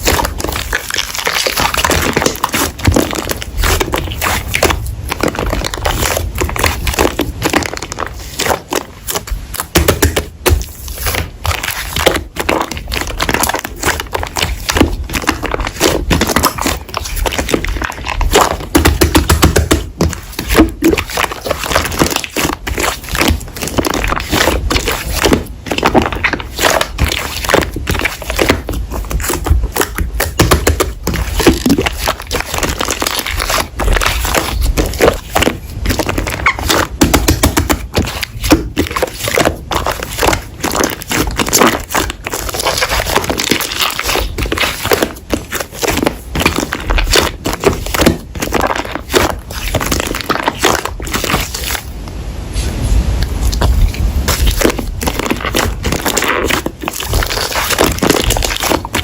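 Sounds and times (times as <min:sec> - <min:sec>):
slime crackling and popping: 0:00.0 - 0:51.9, 0:53.2 - 0:59.0.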